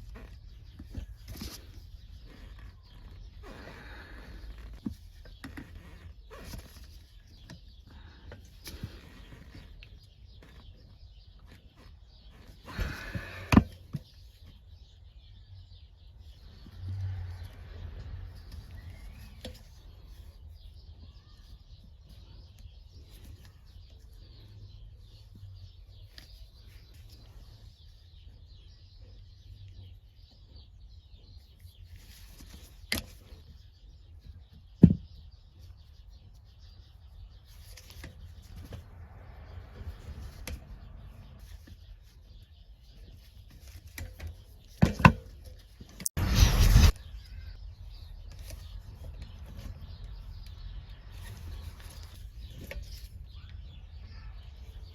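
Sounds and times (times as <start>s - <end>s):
faint bird chirping: 0.0s - 54.9s
low hum: 46.2s - 52.4s.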